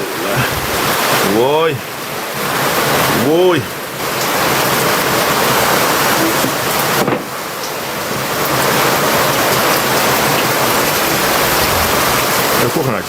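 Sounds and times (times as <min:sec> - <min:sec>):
strong wind: 0:00.0 - 0:03.2, 0:09.2 - 0:13.0
heavy rain: 0:00.0 - 0:13.0.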